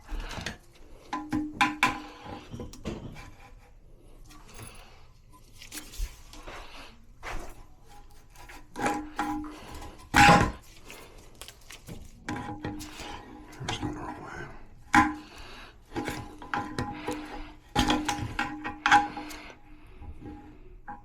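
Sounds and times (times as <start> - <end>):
hard objects knocking and clunking: 0.0 - 3.7, 8.4 - 10.7, 11.9 - 21.0.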